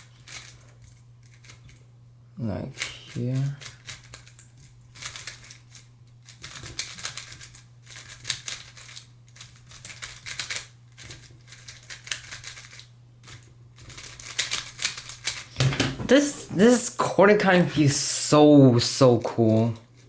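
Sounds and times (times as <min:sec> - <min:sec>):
speed cube plastic clicks: 0:06.4 - 0:15.6.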